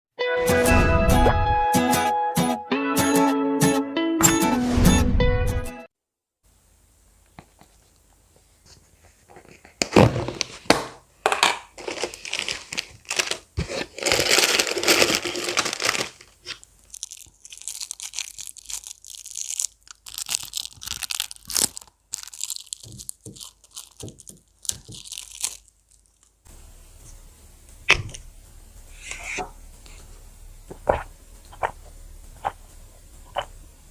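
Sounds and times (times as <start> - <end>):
plastic packaging crinkling: 11.4 - 26.5.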